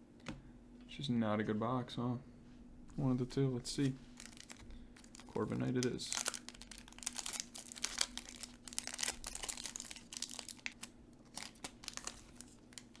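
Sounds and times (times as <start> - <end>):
foil wrapper tearing and crinkling: 4.2 - 13.0.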